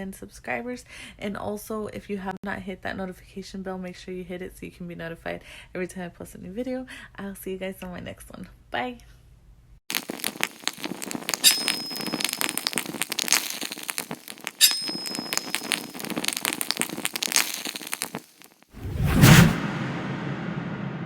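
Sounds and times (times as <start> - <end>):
crackling clicking sound effects: 9.9 - 19.6
thin high tone: 11.1 - 18.2
low whoosh: 18.8 - 21.0.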